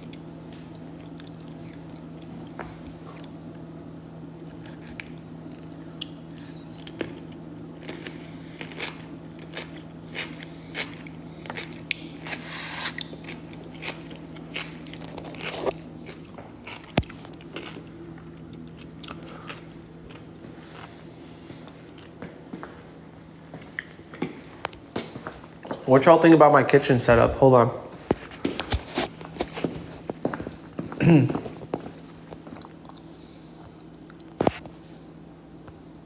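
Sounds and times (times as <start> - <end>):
chewing with crunches: 0.0 - 3.7, 4.4 - 22.8, 28.0 - 34.7
steady low hum: 0.0 - 36.0.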